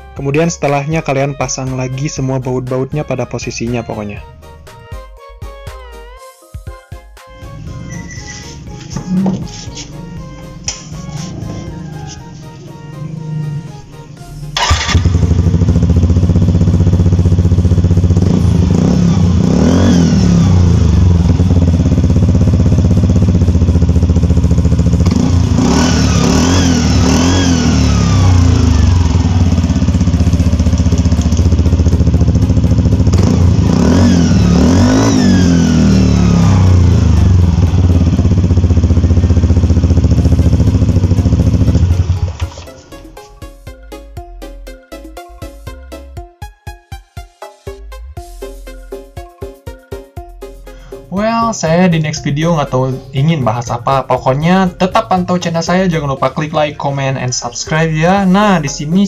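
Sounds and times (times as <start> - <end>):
scooter engine revving: 7.5 - 43.0
whistle from metal plate: 7.8 - 8.5.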